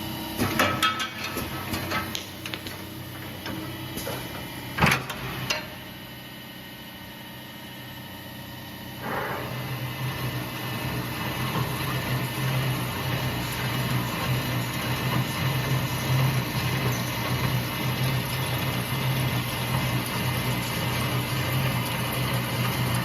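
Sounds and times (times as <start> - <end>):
drilling machine humming: 9.0 - 23.0.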